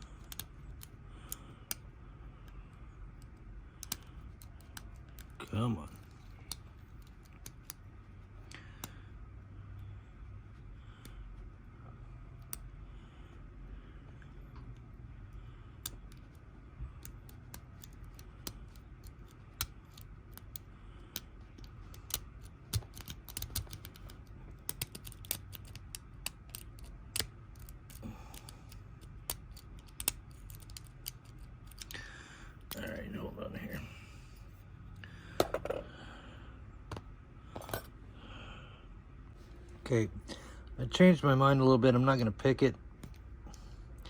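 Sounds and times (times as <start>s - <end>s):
faint low hum: 0.0s - 44.0s
lock pick metallic clicks: 17.0s - 32.0s.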